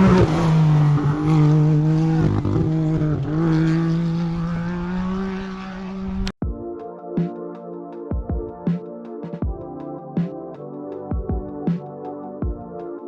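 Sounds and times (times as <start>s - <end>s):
rally car engine revving: 0.0s - 6.3s
electronic music: 6.4s - 13.0s.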